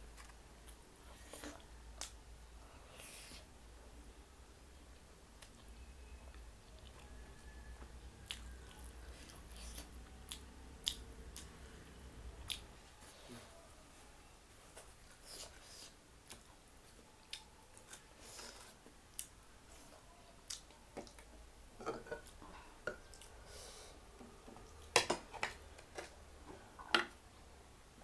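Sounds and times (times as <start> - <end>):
person chewing: 8.2 - 13.6, 14.7 - 21.2.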